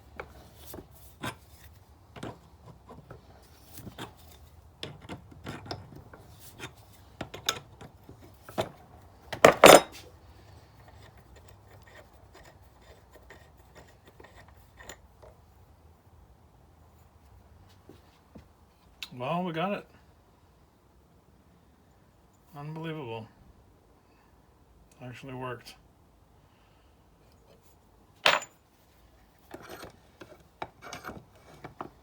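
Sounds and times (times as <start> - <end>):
metal clatter: 9.4 - 10.0, 28.2 - 28.6.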